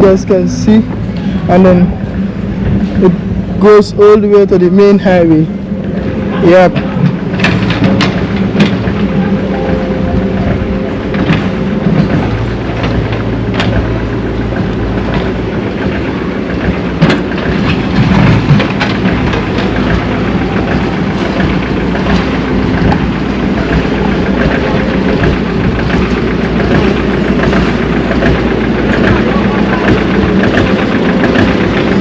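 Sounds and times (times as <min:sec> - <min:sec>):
heavy machinery engines running: 0:00.0 - 0:32.0
sharp knocks: 0:06.7 - 0:09.1, 0:10.4 - 0:32.0.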